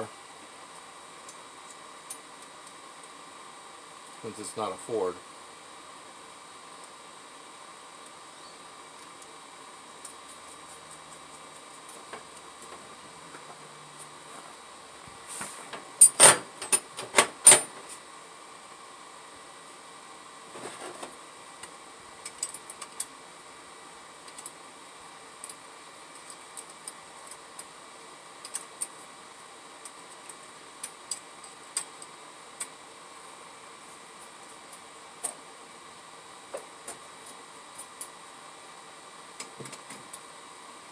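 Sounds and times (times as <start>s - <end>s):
steady background hum: 0.0s - 40.9s
metal parts knocking and clinking: 16.0s - 17.7s.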